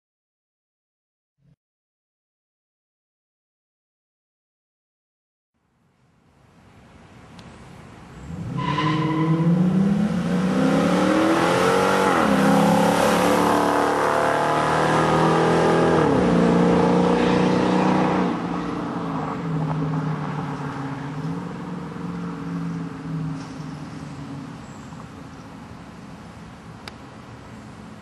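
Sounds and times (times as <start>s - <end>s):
car engine accelerating hard: 8.3s - 24.0s.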